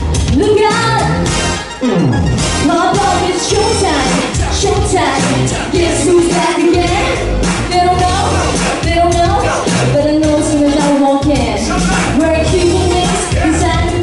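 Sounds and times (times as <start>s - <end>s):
pop song: 0.0s - 14.0s.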